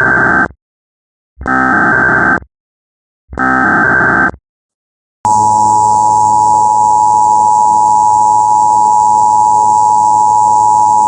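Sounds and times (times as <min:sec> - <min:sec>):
two-tone attention signal: 0:05.3 - 0:11.0.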